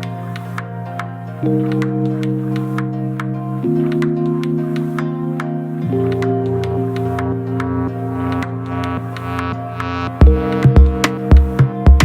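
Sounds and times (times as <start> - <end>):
calm synth chords: 0.0 - 12.0
soft regular beat: 10.2 - 12.0.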